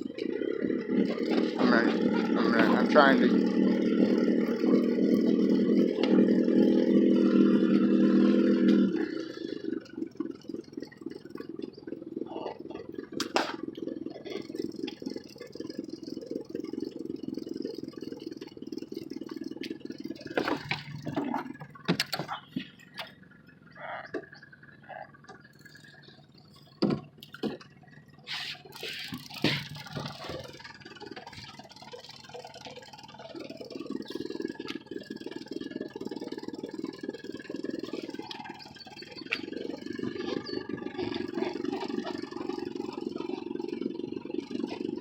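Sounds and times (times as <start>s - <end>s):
water lapping against boat hull: 0.0s - 45.0s
sharp knocks and clicks: 20.4s - 23.1s, 26.8s - 27.7s.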